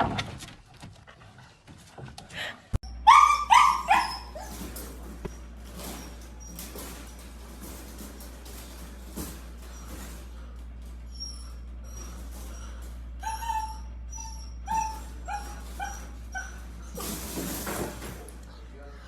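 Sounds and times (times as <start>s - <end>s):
dog whimpering: 2.8s - 4.8s, 11.0s - 17.4s.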